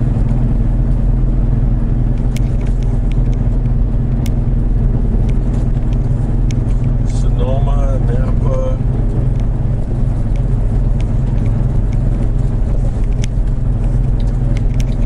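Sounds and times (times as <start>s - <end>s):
car road and engine drone: 0.0s - 15.0s
faint light ticks: 13.0s - 13.4s.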